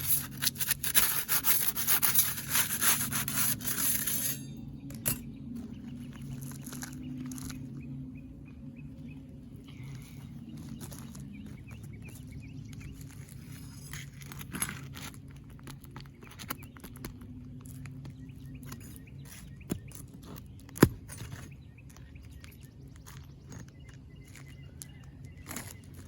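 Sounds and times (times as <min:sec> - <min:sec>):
flat bar scraping shingles: 0:00.0 - 0:04.6
steady low hum: 0:00.0 - 0:25.4.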